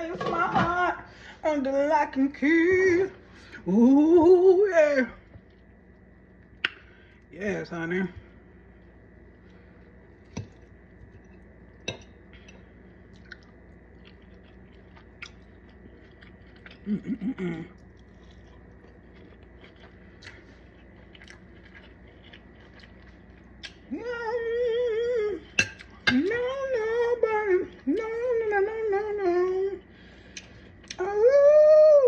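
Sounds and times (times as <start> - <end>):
person chewing food: 9.4 - 24.8, 25.4 - 31.0.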